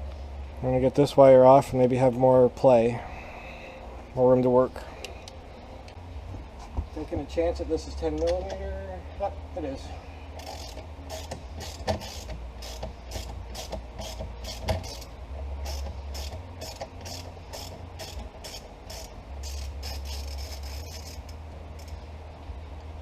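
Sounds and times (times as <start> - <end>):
ratchet wrench clicking: 10.4 - 22.0.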